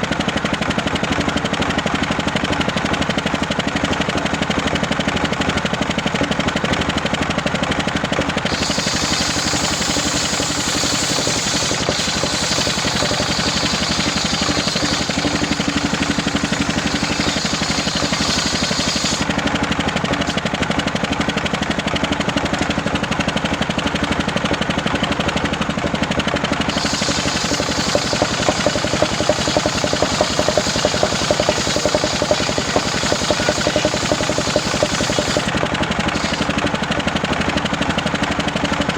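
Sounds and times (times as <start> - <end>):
engine-driven circular saw running: 0.0 - 38.9
saw blade hissing through wood: 8.5 - 19.3, 26.7 - 36.6.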